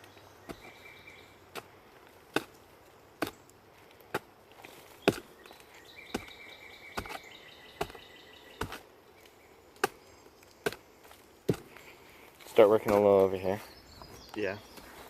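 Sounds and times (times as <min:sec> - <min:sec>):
axe chopping into tree trunk: 0:00.5 - 0:00.8, 0:01.5 - 0:02.6, 0:03.2 - 0:03.4, 0:04.0 - 0:04.3, 0:04.9 - 0:05.4, 0:06.1 - 0:08.9, 0:09.8 - 0:10.0, 0:10.6 - 0:10.8, 0:11.4 - 0:11.8, 0:12.8 - 0:13.3.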